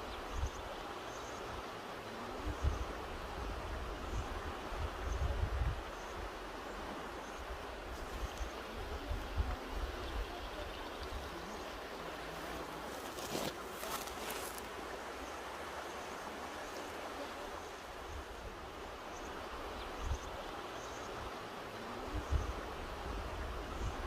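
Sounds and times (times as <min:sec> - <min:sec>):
river rushing: 0:00.0 - 0:24.0
wind rumble on microphone: 0:02.3 - 0:06.3, 0:07.9 - 0:11.5, 0:22.0 - 0:24.0.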